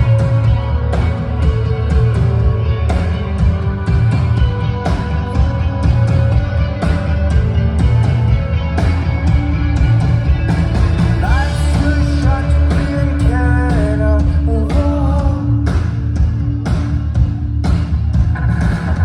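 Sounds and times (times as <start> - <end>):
drums hitting hard: 0.0 - 19.0
live rock band playing: 0.0 - 19.0
lead vocal singing: 11.2 - 15.8.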